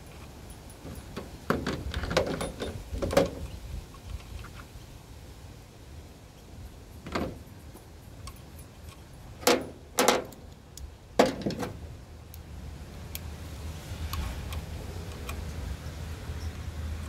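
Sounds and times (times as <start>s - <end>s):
metal parts clanking: 0.8s - 3.4s, 8.2s - 10.4s.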